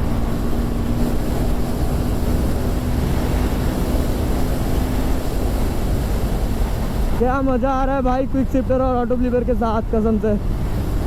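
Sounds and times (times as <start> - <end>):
motorcycle engine running: 0.0 - 7.0
wind rush on microphone: 0.0 - 11.0.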